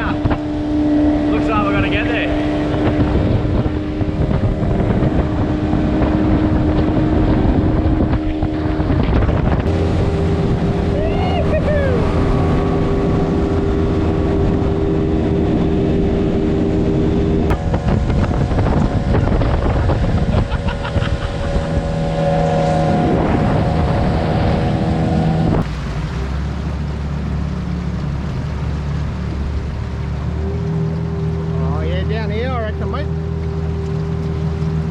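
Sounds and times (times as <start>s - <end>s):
wind on microphone: 0.0s - 25.8s
outboard motor running: 0.0s - 34.9s
water rushing past: 0.0s - 34.9s.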